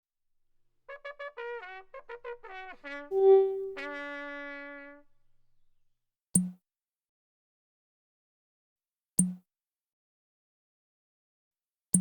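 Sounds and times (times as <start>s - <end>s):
trumpet-like brass phrase: 0.9s - 5.1s.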